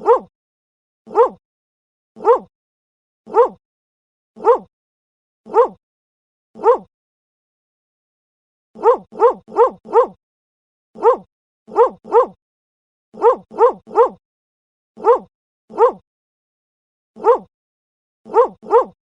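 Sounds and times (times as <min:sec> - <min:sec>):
dog barking: 0:00.0 - 0:00.3, 0:01.1 - 0:01.4, 0:02.2 - 0:02.5, 0:03.3 - 0:03.6, 0:04.4 - 0:04.7, 0:05.5 - 0:05.8, 0:06.6 - 0:06.9, 0:08.8 - 0:10.2, 0:11.0 - 0:12.4, 0:13.2 - 0:14.2, 0:15.0 - 0:16.0, 0:17.2 - 0:17.5, 0:18.3 - 0:19.0.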